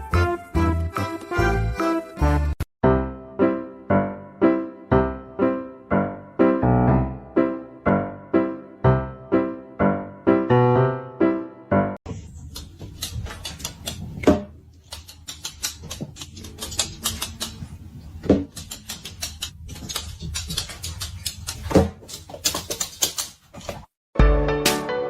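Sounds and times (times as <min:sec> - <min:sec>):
quick irregular clicking and tapping: 0:12.5 - 0:14.2, 0:14.8 - 0:17.7, 0:18.4 - 0:23.4.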